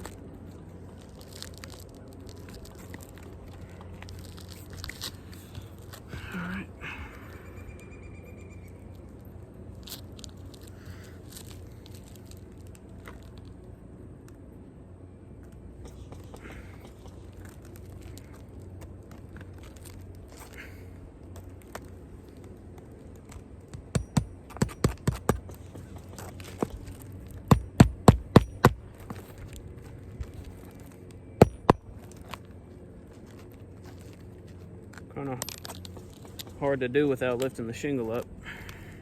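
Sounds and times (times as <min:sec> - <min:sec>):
hammer driving roofing nails: 0:23.7 - 0:29.1, 0:31.4 - 0:32.0.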